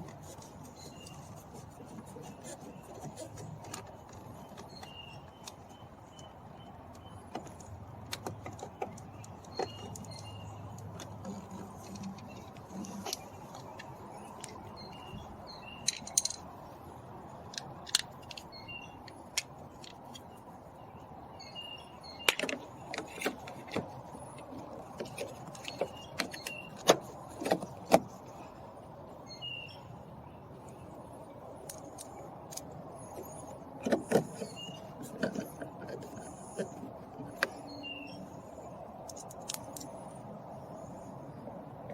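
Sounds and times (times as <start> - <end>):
hand tools clicking and tapping: 0.0 - 14.8, 15.8 - 16.8, 17.4 - 20.4, 22.2 - 28.2, 31.6 - 37.7, 39.0 - 40.2.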